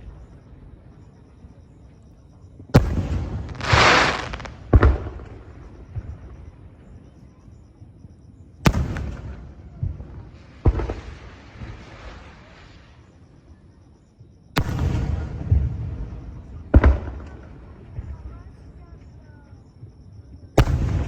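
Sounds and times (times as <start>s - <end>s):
loud crackling hiss: 2.8s - 4.7s
firework booms echoing: 2.8s - 6.4s, 8.7s - 12.1s, 14.6s - 18.2s, 20.6s - 21.0s.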